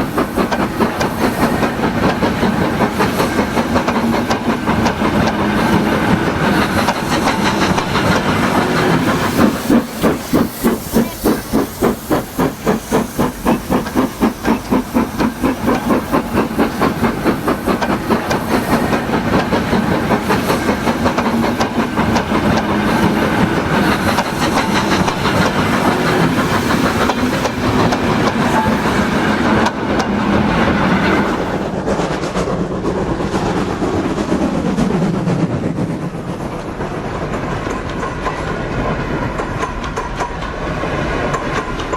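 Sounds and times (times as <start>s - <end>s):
steam hissing: 0.0s - 32.0s
steam locomotive exhaust chuffs: 0.0s - 41.9s.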